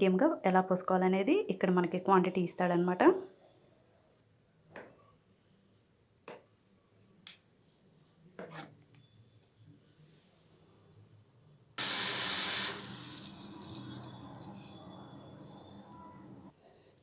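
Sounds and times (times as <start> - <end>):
water pouring: 11.8 - 14.8.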